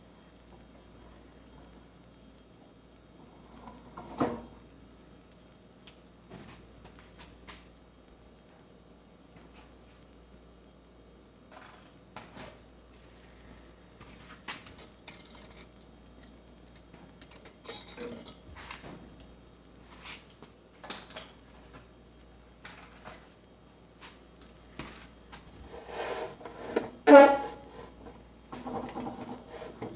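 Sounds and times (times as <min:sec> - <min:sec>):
small steel parts clinking: 0:14.8 - 0:18.4.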